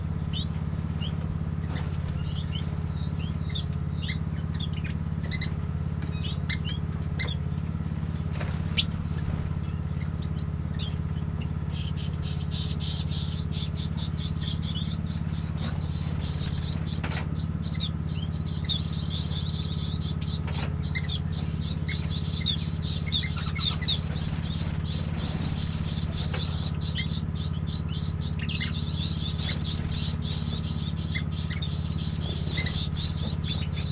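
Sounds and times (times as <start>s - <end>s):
small birds twittering: 0.0s - 33.9s
steady low hum: 0.0s - 33.9s.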